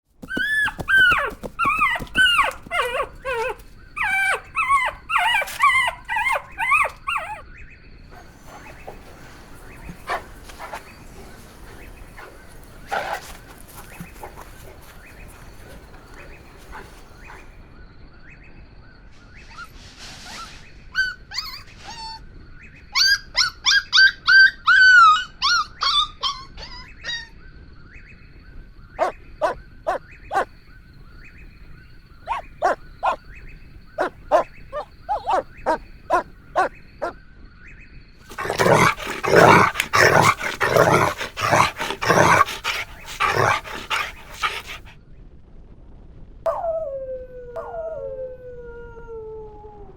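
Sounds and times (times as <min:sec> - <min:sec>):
puppies whining: 0:00.2 - 0:07.4, 0:08.2 - 0:17.4, 0:32.3 - 0:33.2, 0:34.0 - 0:36.7, 0:38.3 - 0:44.9
puppies yapping: 0:00.2 - 0:07.4, 0:08.2 - 0:17.5, 0:32.3 - 0:33.2, 0:34.0 - 0:36.7, 0:38.3 - 0:44.9.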